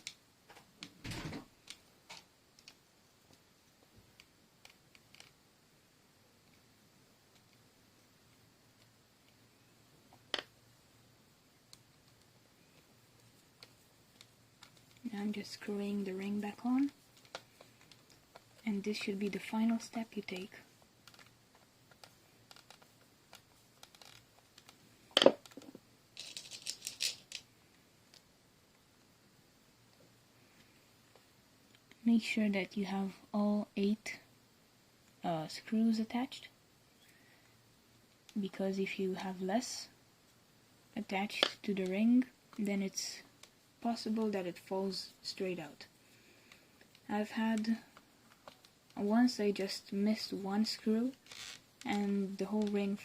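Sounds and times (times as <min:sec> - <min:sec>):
plastic toy parts clicking: 0:26.2 - 0:27.5, 0:41.3 - 0:41.6.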